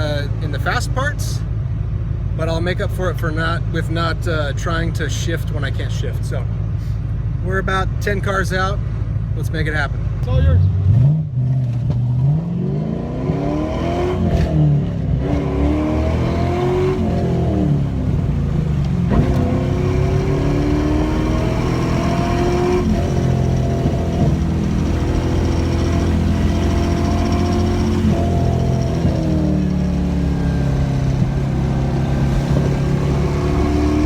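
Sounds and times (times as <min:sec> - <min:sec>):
car engine accelerating hard: 0:10.4 - 0:34.0.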